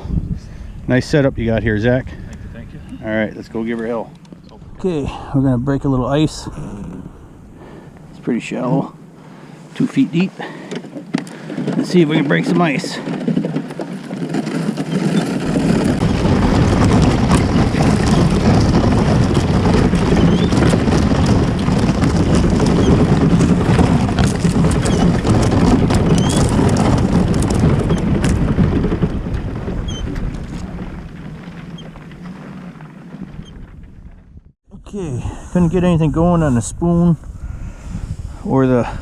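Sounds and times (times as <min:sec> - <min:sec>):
kayak hull crunching through ice: 0:06.5 - 0:34.6.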